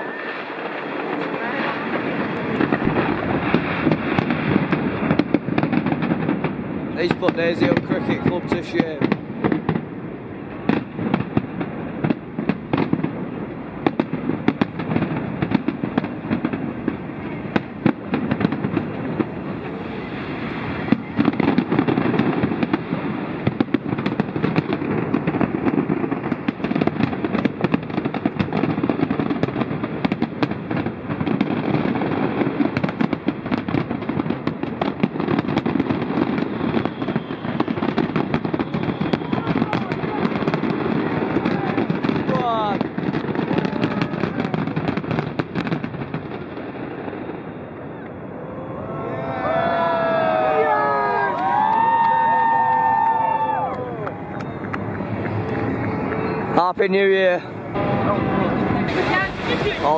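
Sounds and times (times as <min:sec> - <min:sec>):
rumble of explosions: 0:00.0 - 0:50.6
fireworks bangs and crackles: 0:00.0 - 0:59.9.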